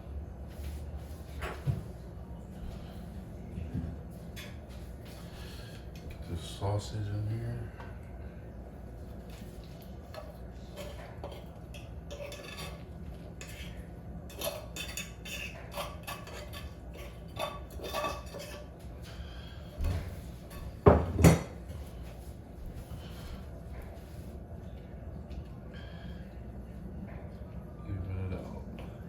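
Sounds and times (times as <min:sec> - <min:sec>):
utensils clinking and scraping dishes: 0:10.0 - 0:19.2.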